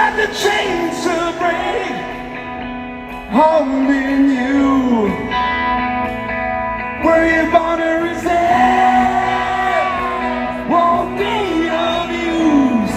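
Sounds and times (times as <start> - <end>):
live rock band: 0.0 - 12.9
person singing long notes: 7.0 - 12.9.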